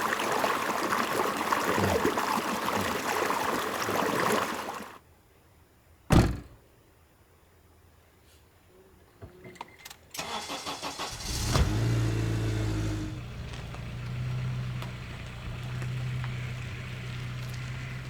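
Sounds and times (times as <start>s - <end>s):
car engine starting and idling: 10.2s - 18.0s.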